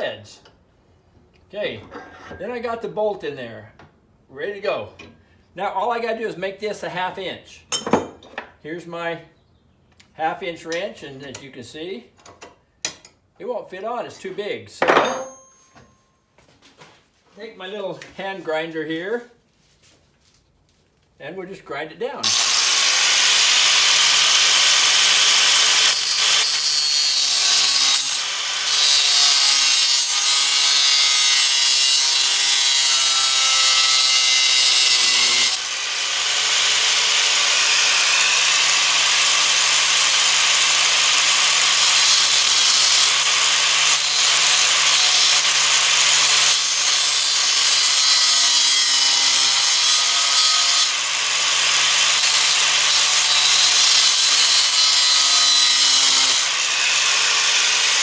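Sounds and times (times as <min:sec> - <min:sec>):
hand grinder grinding metal: 0:22.2 - 0:58.0.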